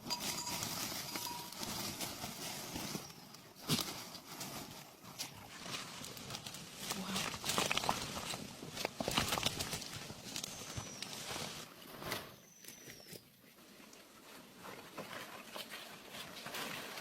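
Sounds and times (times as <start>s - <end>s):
footsteps through vegetation: 0.0s - 13.2s
twigs clicking and snapping: 6.0s - 11.2s.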